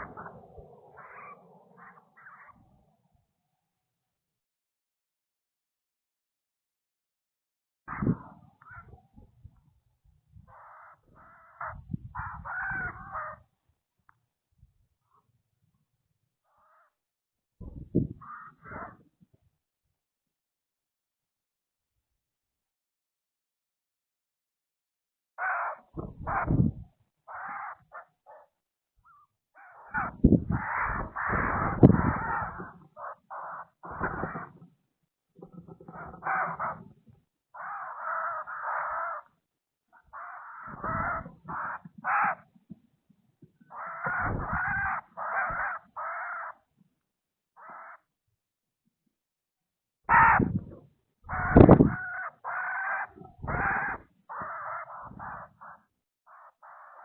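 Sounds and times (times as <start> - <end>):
birds giving harsh calls: 0.0 - 2.7, 10.5 - 13.5, 16.5 - 17.0, 18.2 - 19.0, 25.4 - 28.4, 29.1 - 34.6, 35.7 - 37.0, 37.6 - 39.3, 39.9 - 42.5, 43.6 - 46.7, 47.6 - 48.1, 50.1 - 50.7, 51.3 - 57.0.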